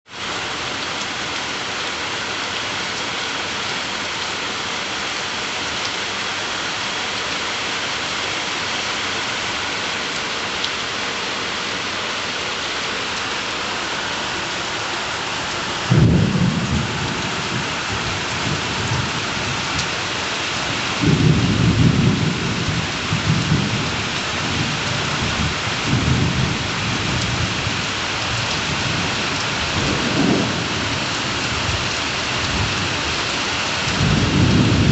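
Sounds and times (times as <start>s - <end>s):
heavy rain pouring: 0.0s - 34.9s.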